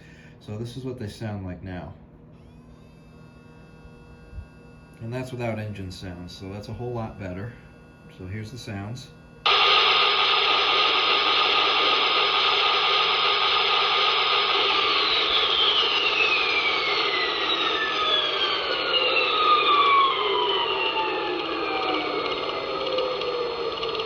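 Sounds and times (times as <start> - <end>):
model train turbine whine and hiss: 9.4 - 24.0.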